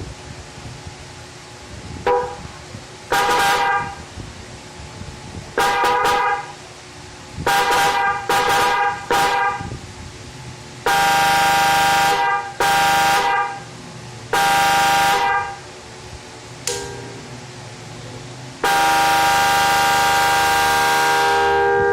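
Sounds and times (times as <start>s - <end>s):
electric car horn blasts: 2.1s - 2.4s, 3.1s - 4.0s, 5.6s - 6.6s, 7.4s - 9.7s, 10.8s - 13.7s, 14.3s - 15.6s, 18.6s - 21.9s.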